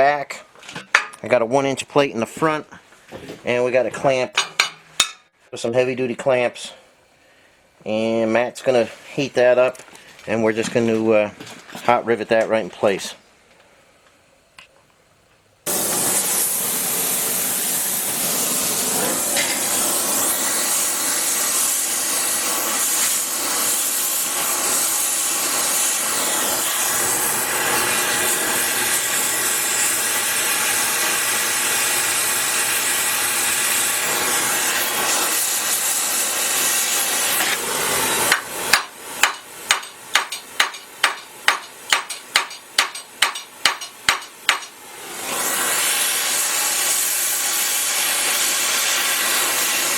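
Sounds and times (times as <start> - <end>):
gas torch hissing: 15.6 - 49.9
hammer blows on rivet: 38.3 - 44.7.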